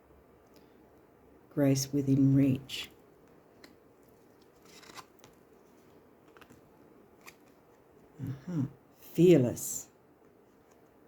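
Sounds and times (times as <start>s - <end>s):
cards clicking and rustling: 3.5s - 5.4s, 6.2s - 6.6s, 7.2s - 7.8s.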